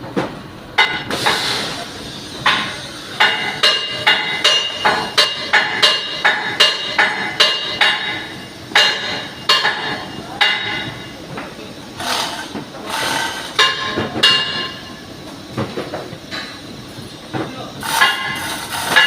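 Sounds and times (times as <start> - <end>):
hammer striking metal: 0.8 - 1.4, 2.4 - 11.2, 13.1 - 14.9, 17.9 - 19.0.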